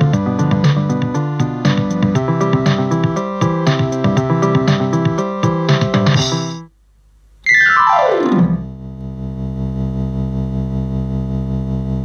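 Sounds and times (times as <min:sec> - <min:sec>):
synth keyboard gliding note: 0:07.5 - 0:08.8.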